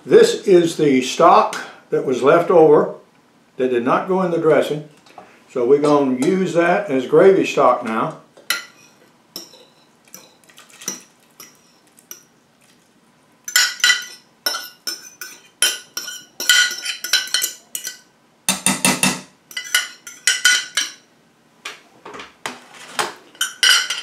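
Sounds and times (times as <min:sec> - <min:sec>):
metal spoon scraping a dish: 0:13.5 - 0:18.1, 0:19.5 - 0:20.9.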